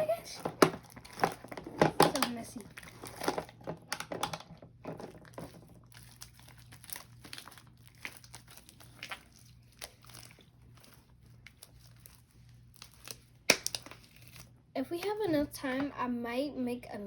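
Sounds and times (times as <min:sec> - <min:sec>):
slime clicking and crackling: 0:04.9 - 0:14.5.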